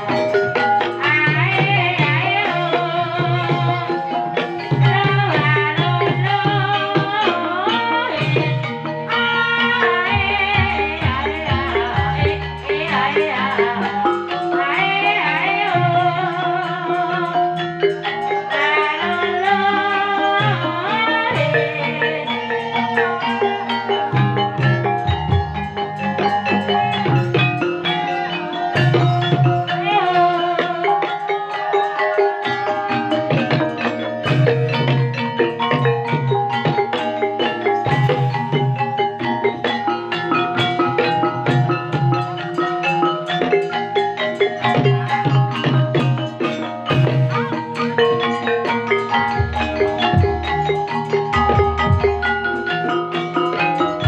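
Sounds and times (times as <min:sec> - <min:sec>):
percussive beat: 0:00.0 - 0:54.0.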